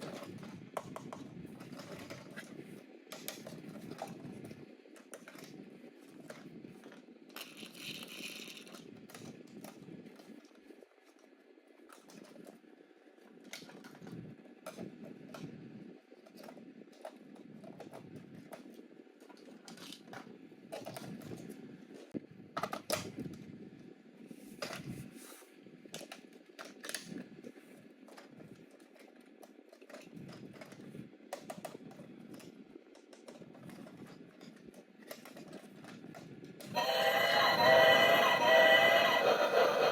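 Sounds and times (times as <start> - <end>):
toys clicking and tapping: 36.8 - 39.9.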